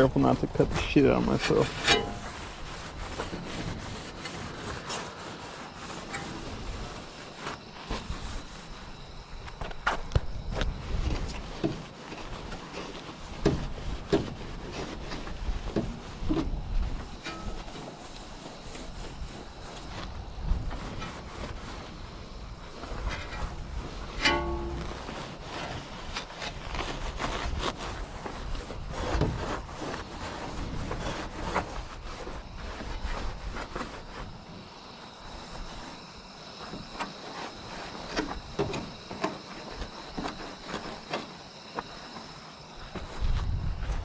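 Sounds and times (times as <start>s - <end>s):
scrubbing on metal boat hull: 0.0s - 10.0s, 10.9s - 34.7s.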